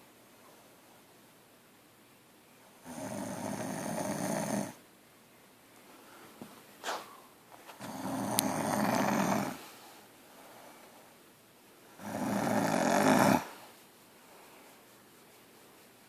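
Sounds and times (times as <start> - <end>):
woman snoring: 2.9 - 4.8, 7.8 - 9.6, 12.0 - 13.5.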